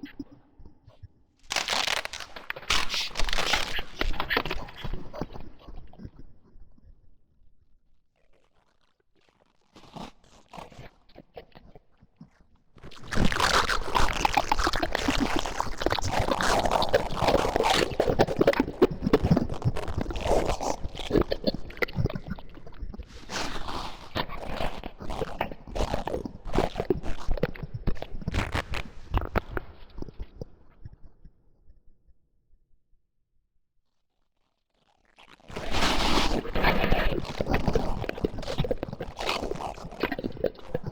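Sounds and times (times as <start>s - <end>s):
monster crunching and chewing: 1.5s - 4.4s.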